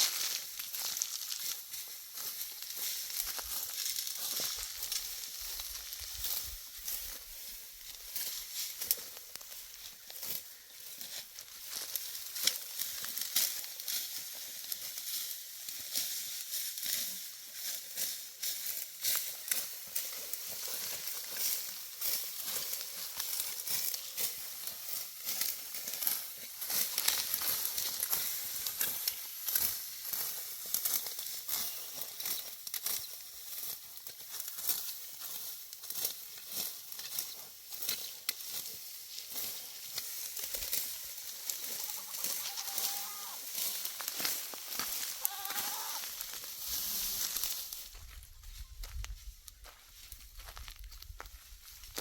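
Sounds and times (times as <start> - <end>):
sickle cutting dry wheat stalks: 0.0 - 52.0
short animal call: 45.2 - 46.0.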